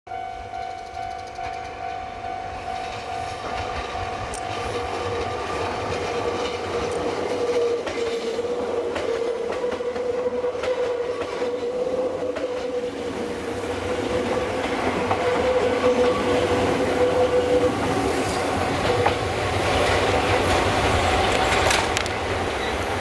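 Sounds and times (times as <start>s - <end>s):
level-crossing alarm ringing: 0.1s - 6.9s
train wheels clacking over rail joints: 2.8s - 13.1s, 13.8s - 23.0s.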